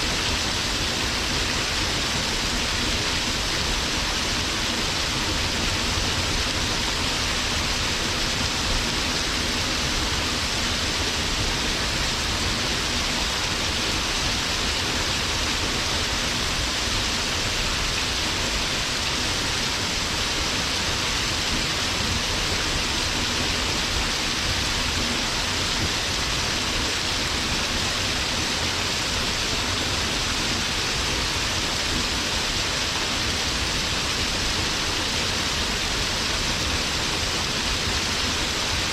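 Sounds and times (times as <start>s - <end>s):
waterfall pouring onto rock: 0.0s - 38.9s.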